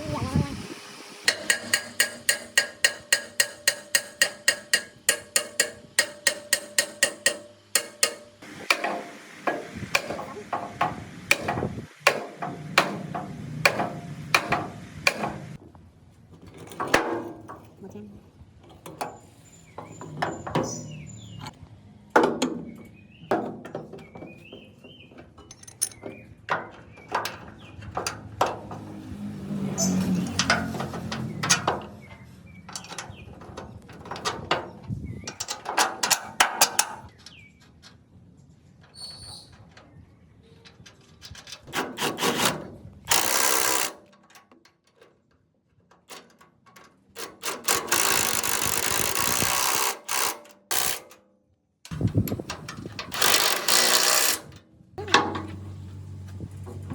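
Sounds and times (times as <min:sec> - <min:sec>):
clicks and knocks of tools: 0:01.3 - 0:15.6, 0:23.3 - 0:28.9, 0:30.0 - 0:38.0, 0:40.6 - 0:51.2, 0:51.8 - 0:55.6.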